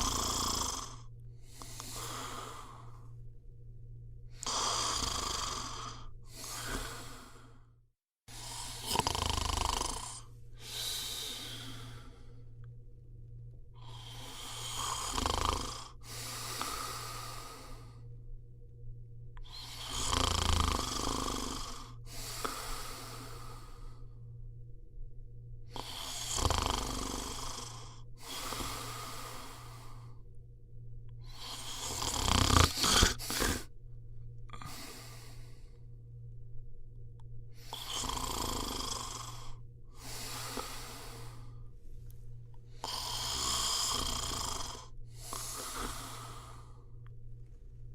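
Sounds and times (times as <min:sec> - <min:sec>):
person snoring: 0:00.0 - 0:03.2, 0:04.3 - 0:07.7, 0:08.3 - 0:12.5, 0:13.8 - 0:18.1, 0:19.4 - 0:24.2, 0:25.6 - 0:30.2, 0:31.2 - 0:33.7, 0:34.5 - 0:35.8, 0:37.6 - 0:41.7, 0:42.7 - 0:47.0
faint low hum: 0:00.0 - 0:47.9.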